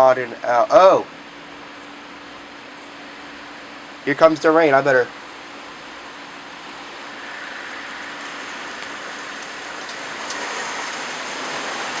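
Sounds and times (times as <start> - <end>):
rain hissing: 5.4 - 12.0.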